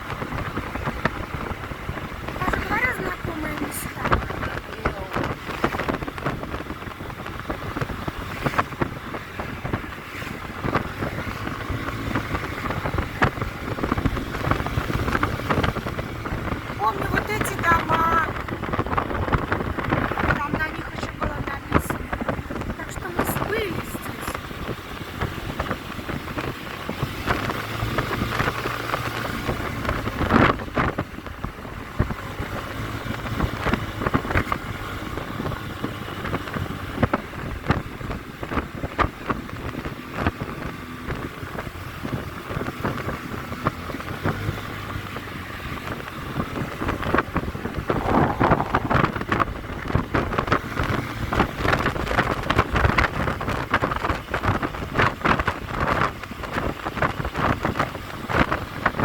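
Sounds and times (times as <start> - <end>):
scooter engine running: 0.0 - 48.2
wind buffeting microphone: 0.0 - 59.0.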